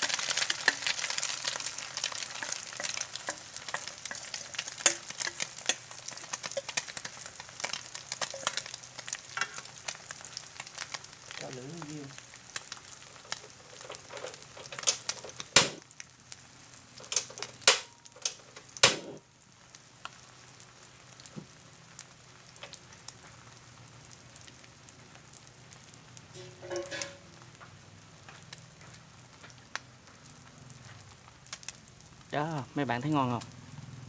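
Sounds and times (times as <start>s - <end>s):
oil spattering and popping: 0.0s - 11.5s, 12.2s - 16.1s, 17.0s - 19.3s
food sizzling in a pan: 0.0s - 34.0s.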